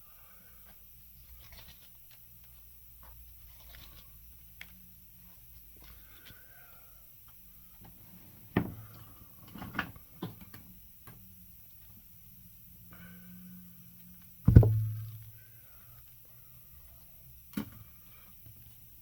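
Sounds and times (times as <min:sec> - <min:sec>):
knocks on a workbench: 0:14.5 - 0:15.2
heavy thud with low ring: 0:14.5 - 0:15.3.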